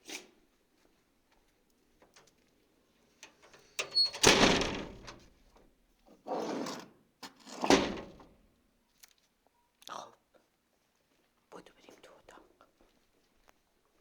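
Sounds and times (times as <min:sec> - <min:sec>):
door banging shut: 0:03.8 - 0:05.2, 0:07.7 - 0:08.2
door latch clicks: 0:03.8 - 0:05.2
door rattle: 0:03.8 - 0:05.2, 0:07.7 - 0:08.2.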